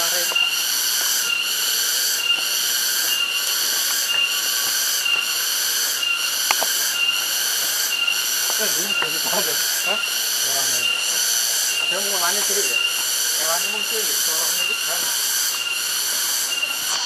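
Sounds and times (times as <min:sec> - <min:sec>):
cicadas buzzing chorus: 0:00.0 - 0:17.0.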